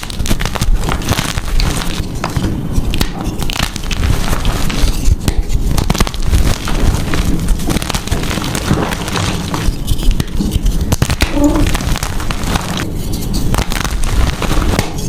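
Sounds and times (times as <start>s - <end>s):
chalk being crushed: 0.0s - 15.0s.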